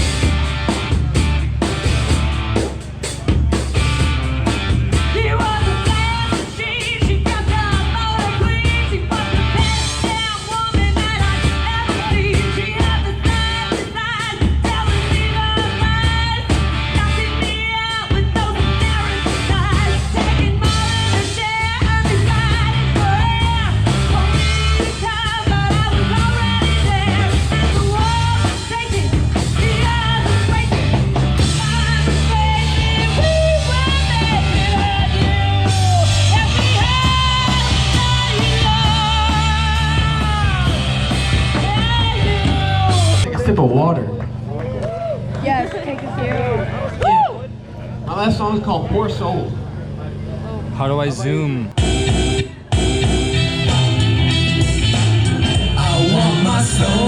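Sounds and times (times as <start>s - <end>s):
drum kit: 0.0s - 43.3s, 51.7s - 57.0s
electric guitar: 0.0s - 47.3s, 51.7s - 57.0s
bass guitar: 0.0s - 57.0s
person singing: 55.4s - 57.0s.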